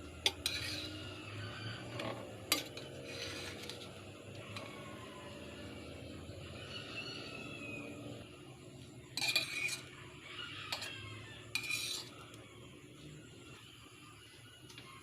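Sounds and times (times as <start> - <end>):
metal utensil scraping a pan: 0.0 - 5.0, 9.0 - 12.4.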